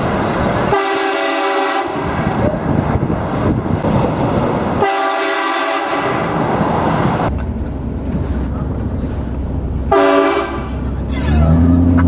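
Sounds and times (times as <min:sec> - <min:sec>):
street noise: 0:00.0 - 0:12.0
train horn blasts: 0:00.7 - 0:02.1, 0:04.8 - 0:06.2, 0:09.9 - 0:10.8.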